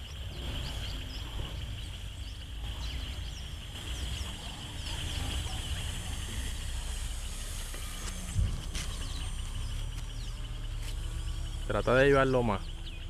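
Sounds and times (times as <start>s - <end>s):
wind rumbling on microphone: 0.0s - 10.4s
bird chirps: 0.0s - 13.0s
steady high-pitched hum: 0.0s - 13.0s.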